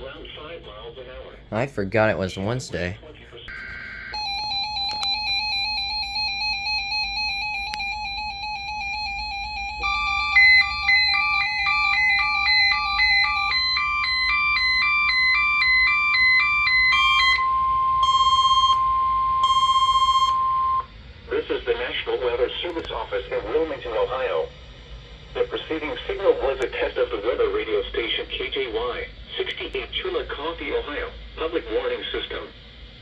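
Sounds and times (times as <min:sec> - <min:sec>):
electronic alert beeping: 0:03.5 - 0:20.8
steady warning alarm tone: 0:03.5 - 0:21.0.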